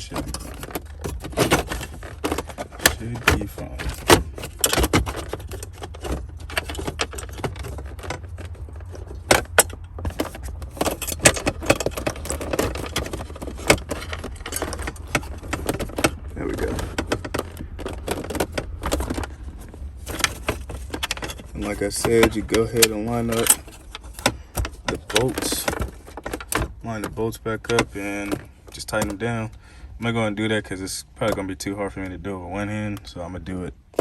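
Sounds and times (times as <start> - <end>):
metal parts clinking and rattling: 0.0 - 29.4.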